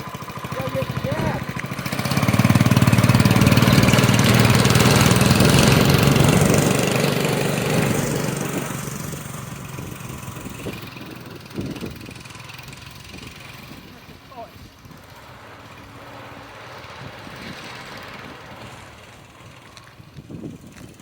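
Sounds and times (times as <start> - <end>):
snowmobile engine running: 0.0 - 21.0.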